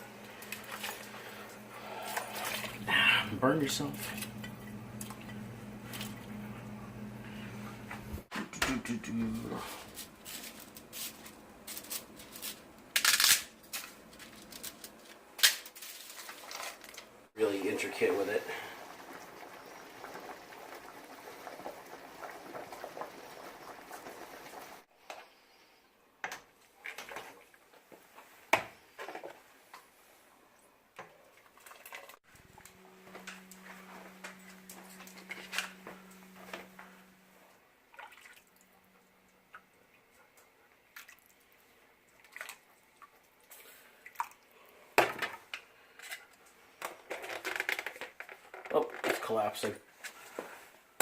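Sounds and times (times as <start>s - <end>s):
steady low hum: 0.0s - 11.8s, 32.3s - 37.6s
rustling and scraping: 9.4s - 17.1s.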